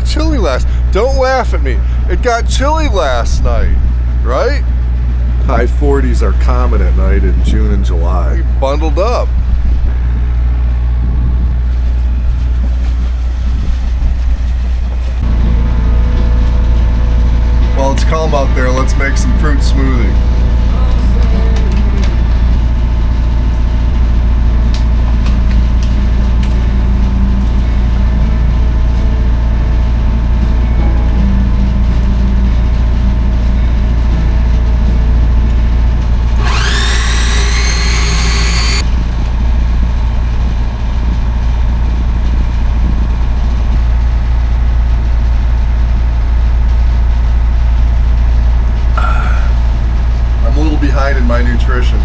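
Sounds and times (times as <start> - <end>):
boat engine running: 0.0 - 30.4, 36.3 - 43.3
blender whirring: 36.4 - 38.8.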